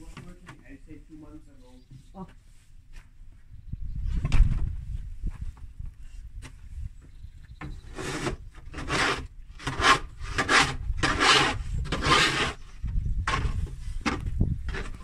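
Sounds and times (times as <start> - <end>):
shovel scraping snow and ice: 7.8 - 12.6.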